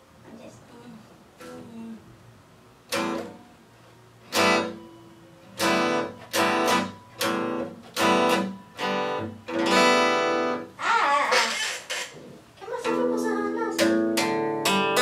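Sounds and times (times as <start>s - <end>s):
guitar strumming chords: 2.9s - 3.6s, 4.2s - 10.8s, 12.8s - 15.0s.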